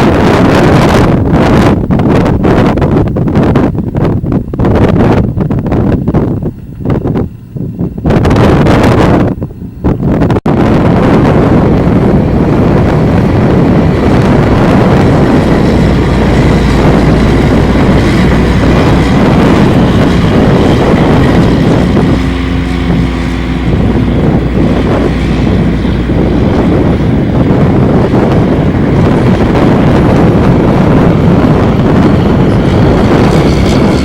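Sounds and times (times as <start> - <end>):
machinery low rumble: 0.0 - 34.0
wind noise on microphone: 0.0 - 34.0
pitched engine tone: 10.5 - 34.0.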